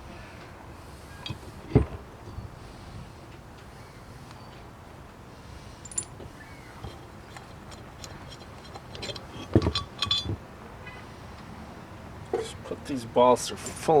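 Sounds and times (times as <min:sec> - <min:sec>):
metal parts clinking and knocking: 0:05.8 - 0:10.4.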